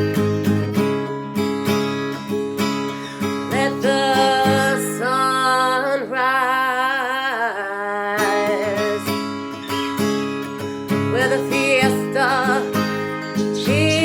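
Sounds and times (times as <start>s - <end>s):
strummed acoustic guitar: 0.0s - 14.0s
person singing with vibrato: 3.5s - 9.2s, 11.0s - 14.0s.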